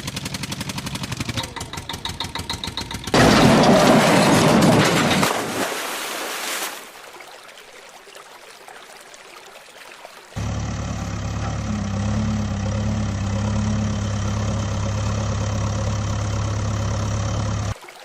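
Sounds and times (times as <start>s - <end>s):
vehicle engine running: 0.0s - 3.3s, 10.4s - 17.8s.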